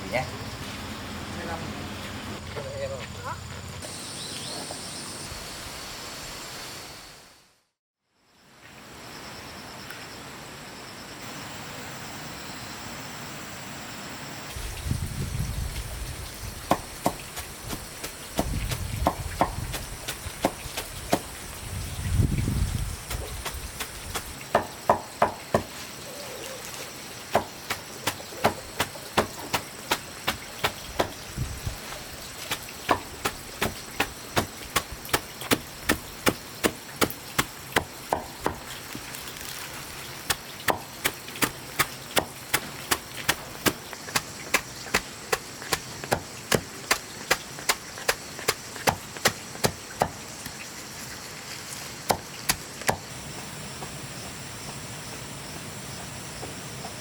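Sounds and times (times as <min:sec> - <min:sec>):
blade chopping wood: 0:16.7 - 0:21.3, 0:27.3 - 0:31.2, 0:32.5 - 0:39.5, 0:40.3 - 0:50.6, 0:52.0 - 0:53.1.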